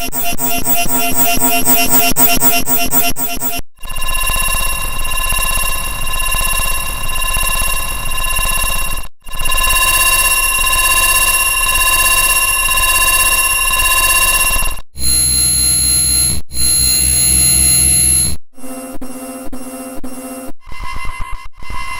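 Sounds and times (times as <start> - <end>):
electronic ringing tone: 0.0 - 3.6.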